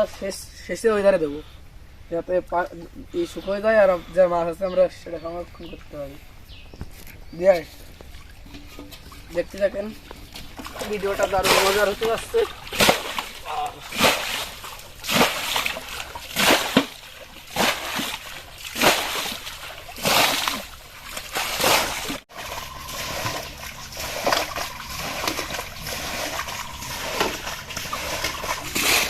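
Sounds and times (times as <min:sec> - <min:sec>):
water sloshing: 0:02.4 - 0:29.0
water splashing: 0:07.4 - 0:29.0.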